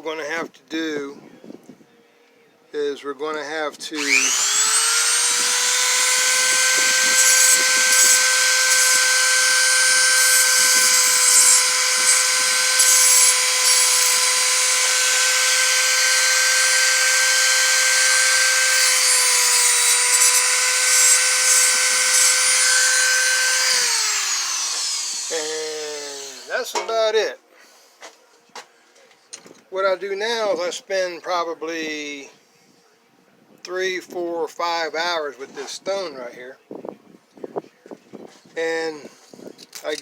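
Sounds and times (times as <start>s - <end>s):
rotary tool whining: 4.0s - 26.7s
cutting wheel grinding metal: 4.0s - 26.8s.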